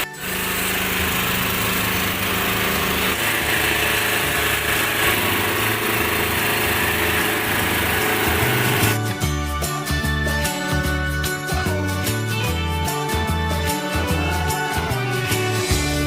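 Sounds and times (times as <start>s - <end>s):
small engine running: 0.0s - 16.0s.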